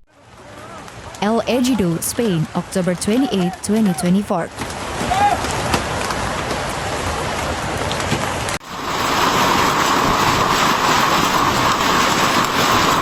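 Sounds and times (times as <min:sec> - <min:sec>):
hail striking hard surfaces: 0:07.8 - 0:13.0.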